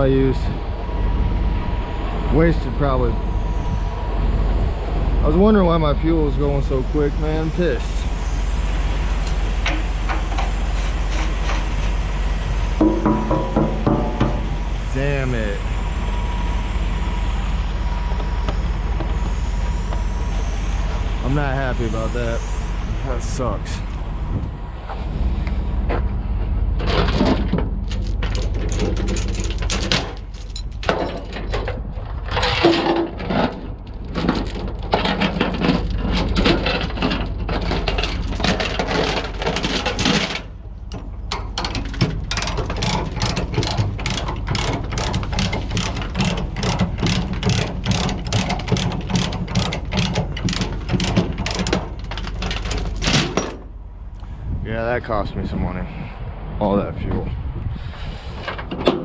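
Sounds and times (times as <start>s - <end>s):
low engine hum: 0.0s - 59.0s
ratchet clicking: 41.3s - 53.0s.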